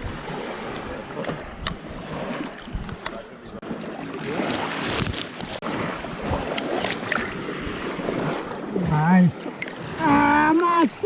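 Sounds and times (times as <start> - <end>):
wind noise on microphone: 0.0 - 3.4, 4.7 - 9.0
water rushing: 0.0 - 11.0.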